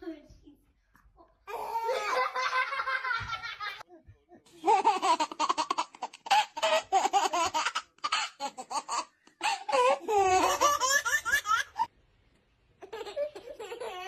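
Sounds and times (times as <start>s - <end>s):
baby laughing: 4.6s - 11.9s, 12.8s - 14.0s
baby giggling: 12.8s - 14.0s.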